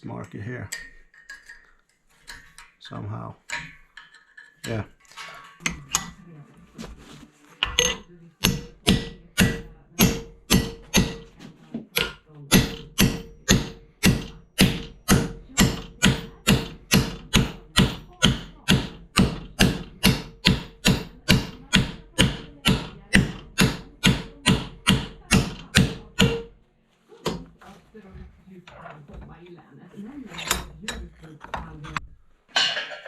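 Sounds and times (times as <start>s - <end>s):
hammer striking steel plate: 7.6s - 11.4s, 12.0s - 26.6s.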